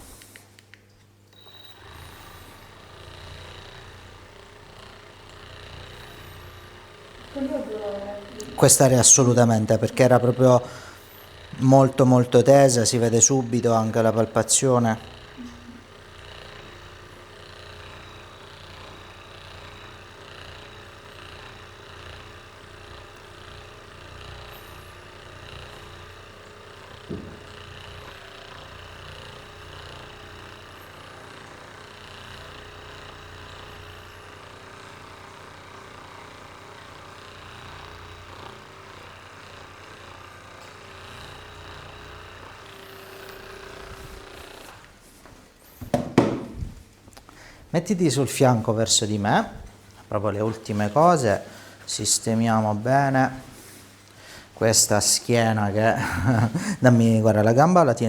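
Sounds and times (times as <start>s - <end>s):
short knock: 27.1s - 27.5s, 45.8s - 46.8s.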